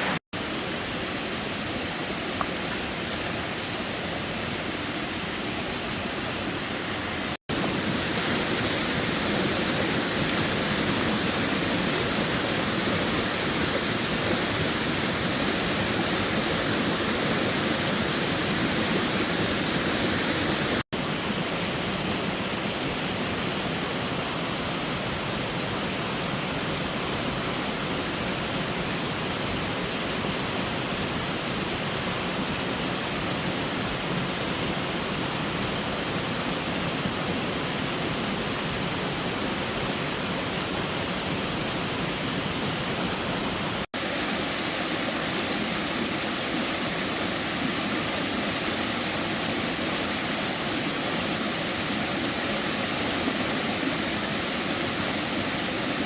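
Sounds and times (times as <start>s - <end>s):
water rushing: 0.0s - 56.0s.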